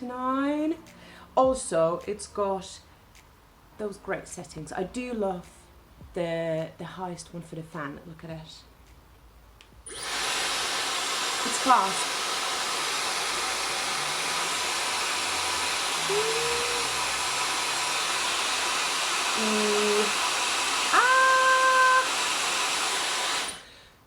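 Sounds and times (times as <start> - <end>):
hair dryer blowing: 9.9 - 23.7.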